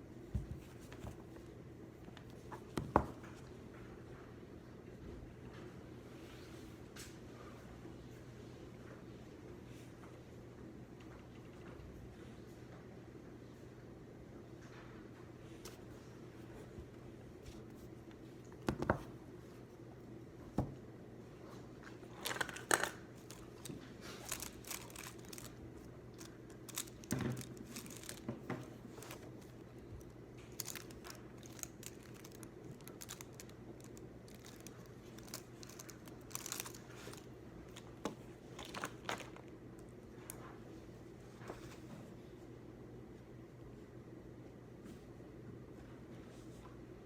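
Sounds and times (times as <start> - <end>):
steady low hum: 0.0 - 47.0
paper rustling and crinkling: 21.5 - 39.5.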